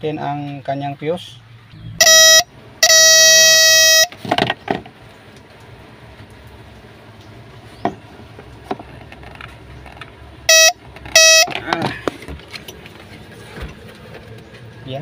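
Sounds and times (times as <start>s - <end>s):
vehicle horn blast: 2.0s - 4.2s, 10.5s - 11.6s.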